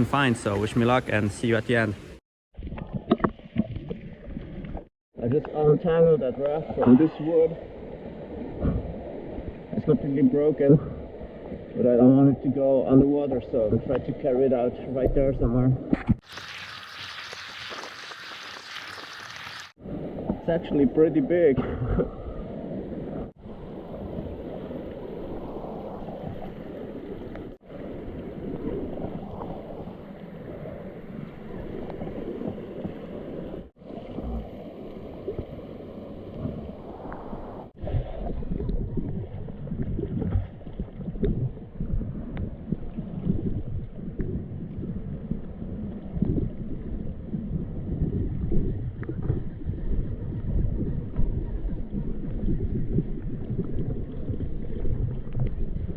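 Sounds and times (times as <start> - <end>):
wind buffeting microphone: 36.4 - 55.9.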